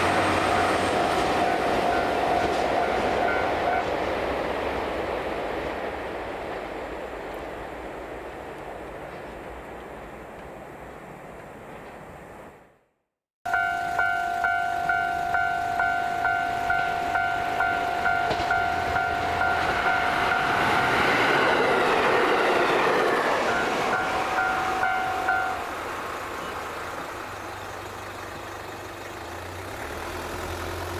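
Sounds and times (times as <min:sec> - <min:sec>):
level-crossing warning bell: 0:00.0 - 0:03.9, 0:13.5 - 0:25.8
diesel train passing: 0:00.0 - 0:12.8, 0:13.5 - 0:30.9.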